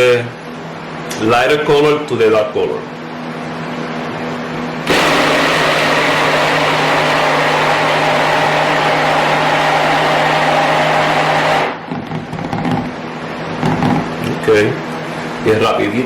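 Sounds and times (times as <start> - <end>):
electric blender running: 4.9 - 11.9.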